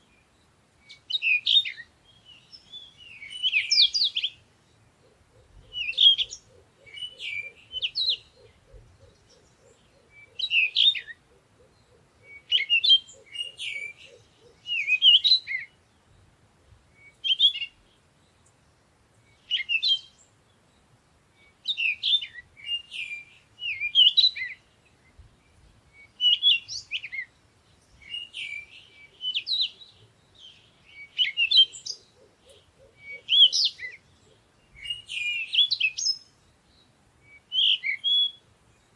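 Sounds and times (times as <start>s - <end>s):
songbirds chirping: 0.0s - 38.9s.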